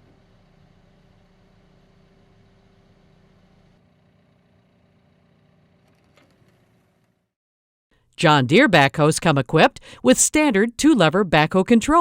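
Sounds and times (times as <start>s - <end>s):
low machine hum: 0.0s - 6.9s.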